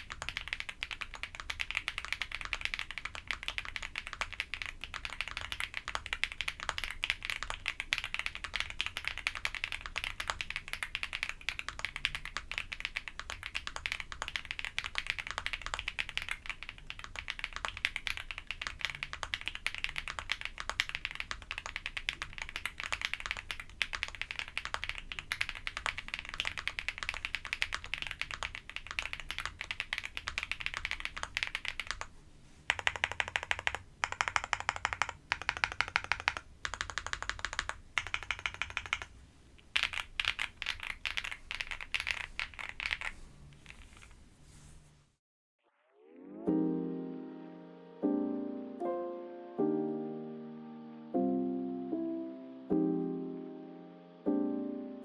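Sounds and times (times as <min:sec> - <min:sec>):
fast typing on mechanical keyboard: 0:00.0 - 0:32.1, 0:32.7 - 0:44.2.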